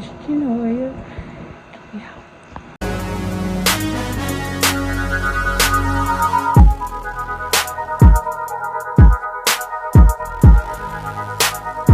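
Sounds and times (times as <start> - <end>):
hip-hop style music: 2.8 - 11.9.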